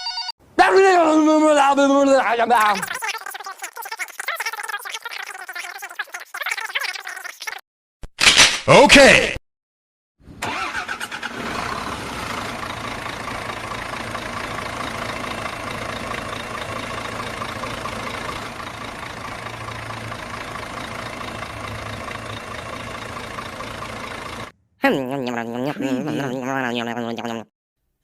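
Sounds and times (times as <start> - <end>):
engine idling: 10.4 - 24.6.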